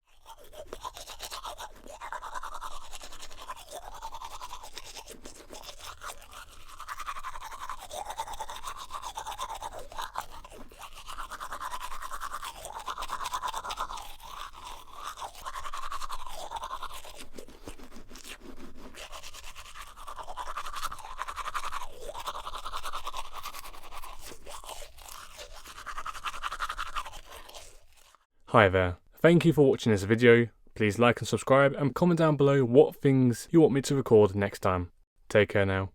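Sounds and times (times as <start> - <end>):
toothbrush scrubbing teeth: 0.0 - 28.3.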